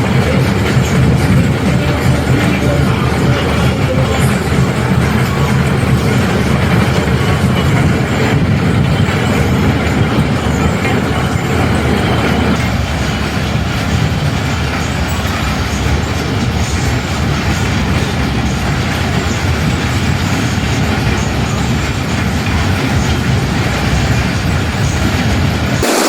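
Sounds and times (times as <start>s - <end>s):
fairground ride cars rattling: 0.0s - 26.0s.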